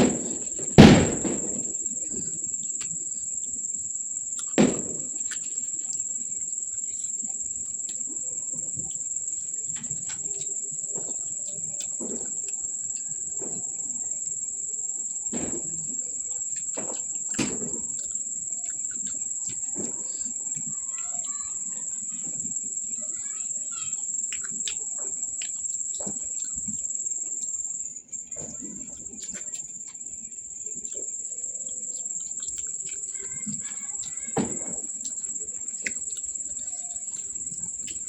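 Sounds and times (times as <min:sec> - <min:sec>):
sharp knock: 0:00.0 - 0:01.7
person chewing food: 0:01.8 - 0:13.4, 0:15.8 - 0:21.6, 0:24.0 - 0:38.0.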